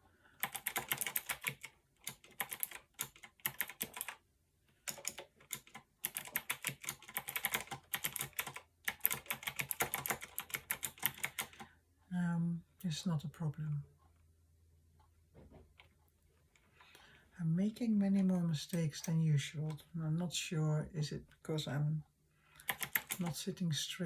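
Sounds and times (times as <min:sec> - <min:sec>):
mechanical keyboard fast typing: 0:00.4 - 0:04.2, 0:04.9 - 0:11.6, 0:22.7 - 0:23.4.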